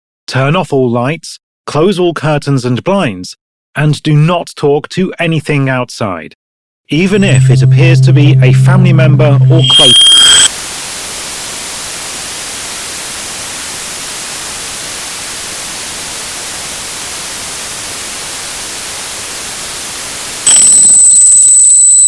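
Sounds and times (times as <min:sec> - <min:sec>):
high-pitched alert tone: 0:07.1 - 0:10.5
broadcast static hiss: 0:10.0 - 0:20.4.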